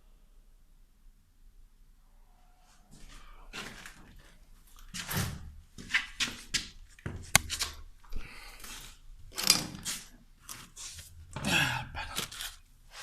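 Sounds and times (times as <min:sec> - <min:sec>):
sharp click: 0:07.3 - 0:07.8.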